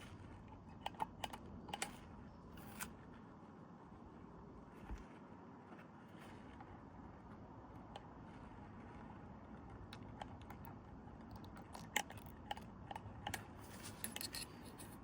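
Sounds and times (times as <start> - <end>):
small mechanical clicks and ticks: 0.0 - 3.0, 9.6 - 15.0.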